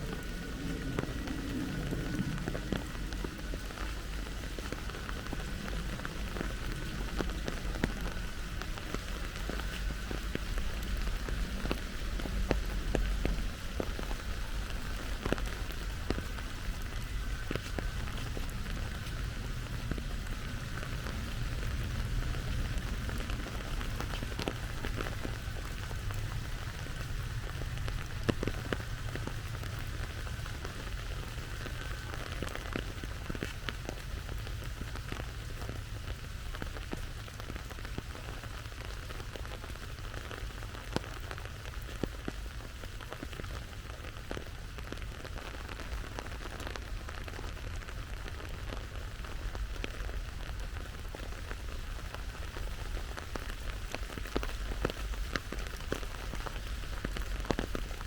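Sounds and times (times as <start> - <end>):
low background rumble: 0.0 - 58.0
steady rain: 0.0 - 58.0.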